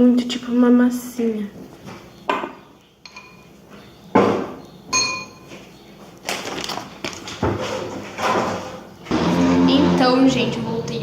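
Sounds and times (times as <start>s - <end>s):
dishes clinking together: 2.3s - 3.5s, 4.2s - 5.5s.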